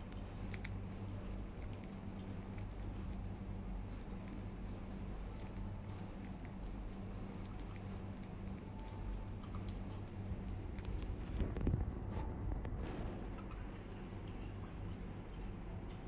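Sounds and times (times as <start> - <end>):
beak clicks and crunches: 0.0 - 12.8
steady low hum: 0.0 - 16.0.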